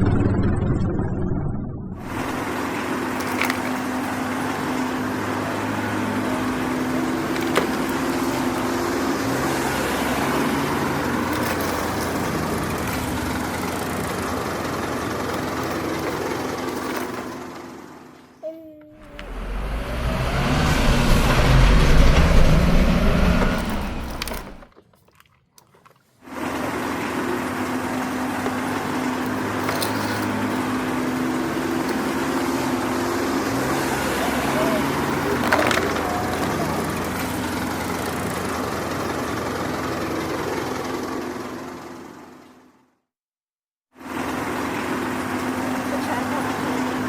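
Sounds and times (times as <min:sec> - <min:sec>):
heavy engine rumbling: 0:00.0 - 0:24.7, 0:26.4 - 0:42.4
engine hum with low tone: 0:00.0 - 0:43.0, 0:44.0 - 0:47.0.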